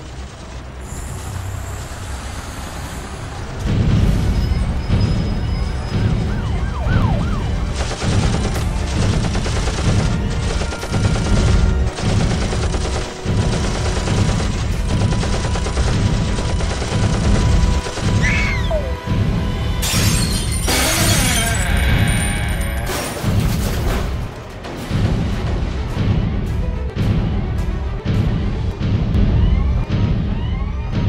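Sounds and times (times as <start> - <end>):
wailing siren-like pitch glides: 6.0 - 7.7.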